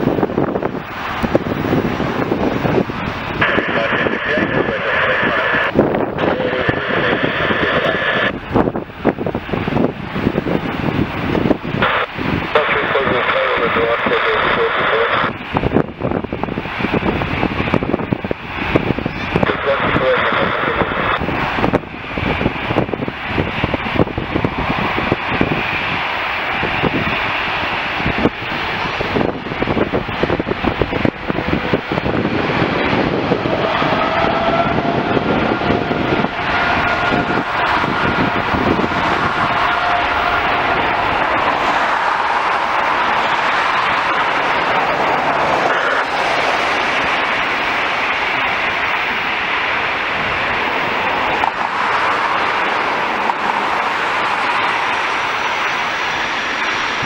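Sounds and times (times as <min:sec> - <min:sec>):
jet airliner engine roar: 0:00.0 - 0:57.0
wind buffeting microphone: 0:00.0 - 0:57.0.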